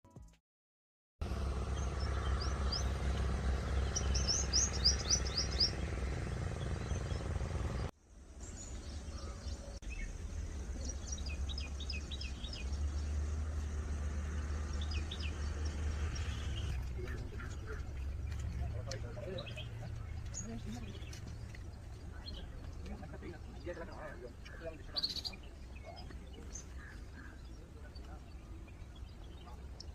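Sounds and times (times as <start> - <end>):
birds chirping: 1.2 - 29.9
steady low rumble: 1.7 - 24.6.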